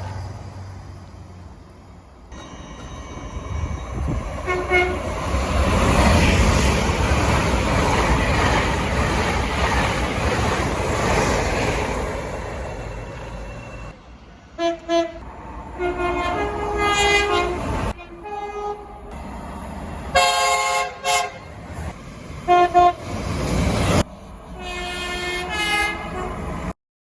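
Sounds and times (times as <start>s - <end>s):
rumble of passing trains: 0.0s - 26.8s
train horn blasts: 4.4s - 5.2s, 14.6s - 19.1s, 20.1s - 21.5s, 22.5s - 23.0s, 24.6s - 26.5s.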